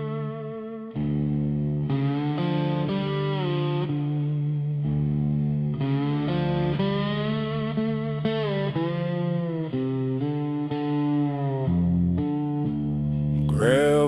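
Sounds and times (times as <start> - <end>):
sustained bass: 13.4 - 14.0.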